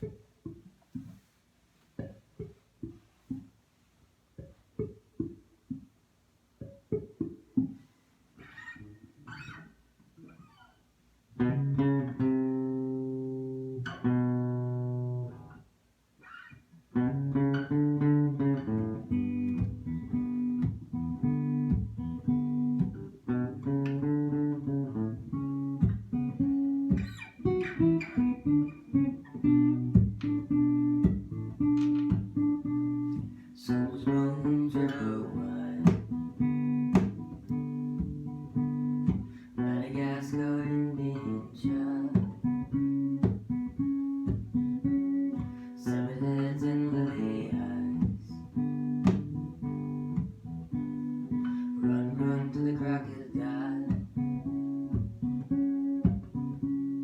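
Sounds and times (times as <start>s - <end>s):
picked guitar pattern: 6.6s - 10.8s, 11.4s - 15.6s, 16.2s - 57.0s
ringing guitar chords: 17.0s - 57.0s.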